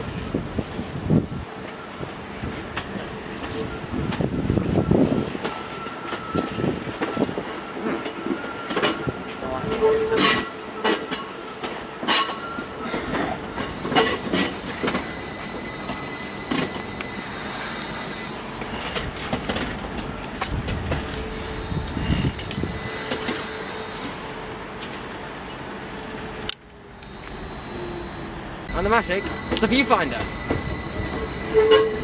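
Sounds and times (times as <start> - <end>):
train wheels clicking over rail joints: 1.6 - 9.2, 10.2 - 25.6, 28.2 - 32.0
high-pitched wheel squeal: 21.4 - 24.3, 27.0 - 32.0.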